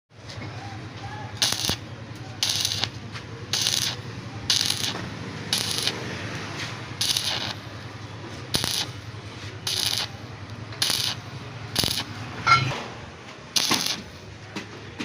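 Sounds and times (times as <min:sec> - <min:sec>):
welding arc crackle: 0:01.4 - 0:06.2, 0:06.8 - 0:07.9, 0:08.5 - 0:12.2, 0:13.5 - 0:14.2.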